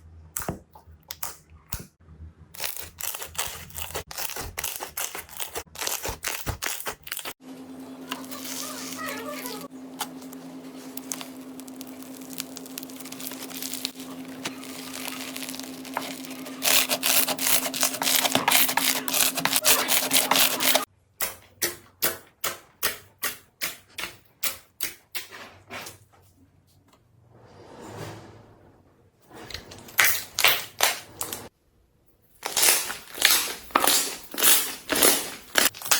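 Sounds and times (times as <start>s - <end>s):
slime squishing: 2.6s - 7.4s, 8.0s - 20.9s, 32.4s - 35.9s
slime crackling: 8.1s - 20.9s, 32.4s - 35.9s.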